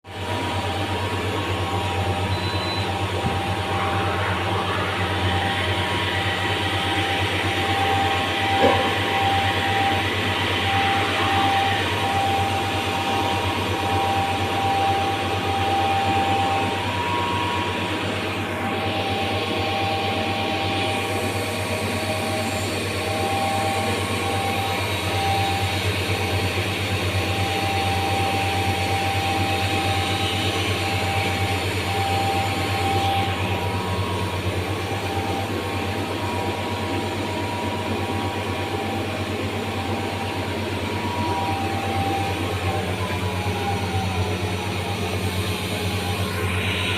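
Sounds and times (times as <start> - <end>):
grinding machine humming: 0.1 - 46.9
thin machine whine: 0.1 - 46.9.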